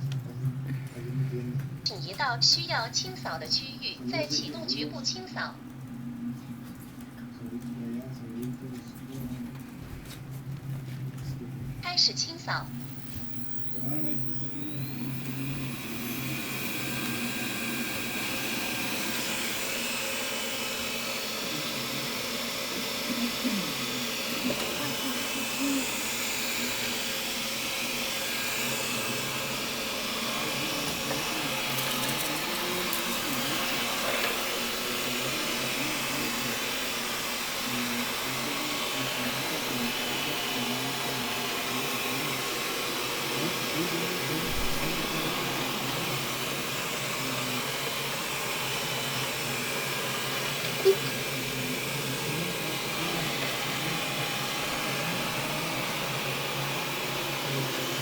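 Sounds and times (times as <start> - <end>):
robot vacuum cleaner humming: 0.0 - 10.8, 11.8 - 58.0.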